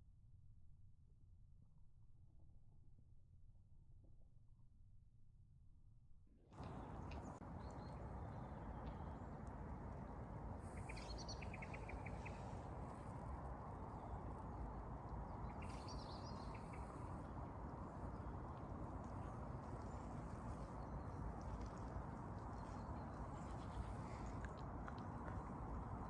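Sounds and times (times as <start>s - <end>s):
low background noise: 6.6s - 26.0s
wild birds singing: 10.0s - 26.0s.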